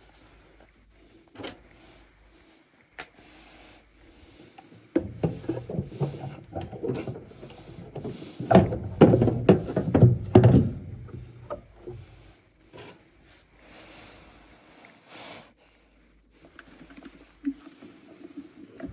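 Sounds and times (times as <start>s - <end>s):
metal parts and tools clattering: 5.1s - 11.4s.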